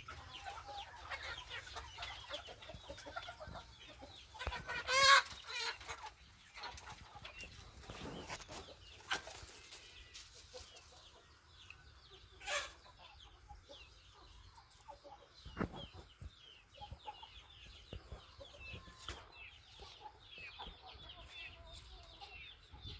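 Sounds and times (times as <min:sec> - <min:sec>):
chickens clucking: 0:00.0 - 0:22.9
loud chicken calls: 0:04.3 - 0:06.2.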